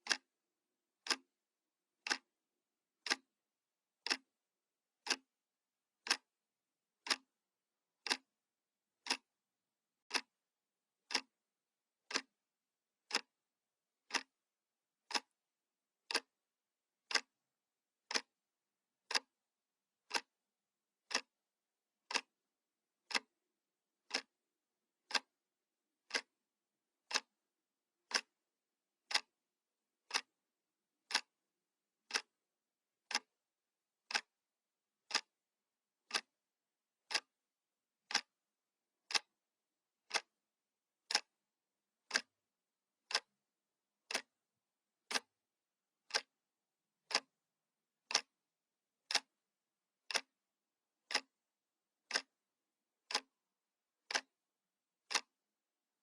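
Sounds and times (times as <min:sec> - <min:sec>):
wall clock ticking: 0:00.0 - 0:00.3, 0:01.0 - 0:01.3, 0:02.0 - 0:02.3, 0:03.0 - 0:03.3, 0:04.0 - 0:04.3, 0:05.0 - 0:05.3, 0:06.0 - 0:06.3, 0:07.0 - 0:07.3, 0:08.0 - 0:08.3, 0:09.0 - 0:09.3, 0:10.0 - 0:10.4, 0:11.0 - 0:11.3, 0:12.0 - 0:12.4, 0:13.0 - 0:13.3, 0:14.0 - 0:14.3, 0:15.0 - 0:15.4, 0:16.0 - 0:16.3, 0:17.0 - 0:17.4, 0:18.0 - 0:18.3, 0:19.0 - 0:19.4, 0:20.0 - 0:20.3, 0:21.0 - 0:21.3, 0:22.0 - 0:22.4, 0:23.0 - 0:23.4, 0:24.0 - 0:24.3, 0:25.0 - 0:25.3, 0:26.0 - 0:26.4, 0:27.0 - 0:27.4, 0:28.0 - 0:28.4, 0:29.0 - 0:29.4, 0:30.0 - 0:30.4, 0:31.0 - 0:31.4, 0:32.0 - 0:32.4, 0:33.0 - 0:33.4, 0:34.0 - 0:34.3, 0:35.0 - 0:35.3, 0:36.0 - 0:36.4, 0:37.0 - 0:37.3, 0:38.0 - 0:38.4, 0:39.0 - 0:39.4, 0:40.0 - 0:40.4, 0:41.0 - 0:41.4, 0:42.0 - 0:42.4, 0:43.0 - 0:43.4, 0:44.1 - 0:44.4, 0:45.0 - 0:45.3, 0:46.0 - 0:46.4, 0:47.0 - 0:47.4, 0:48.0 - 0:48.4, 0:49.0 - 0:49.4, 0:50.1 - 0:50.4, 0:51.1 - 0:51.4, 0:52.0 - 0:52.4, 0:53.0 - 0:53.4, 0:54.0 - 0:54.4, 0:55.0 - 0:55.4.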